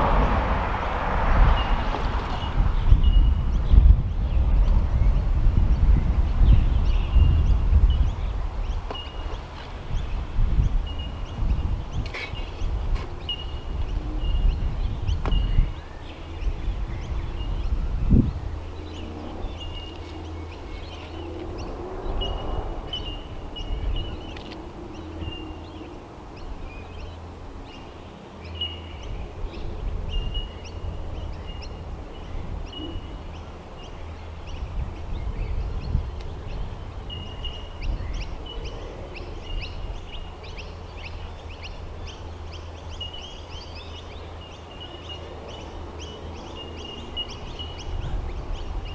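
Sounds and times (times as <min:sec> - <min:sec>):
low rumble: 0:00.0 - 0:08.8
sharp thump: 0:15.2 - 0:15.5.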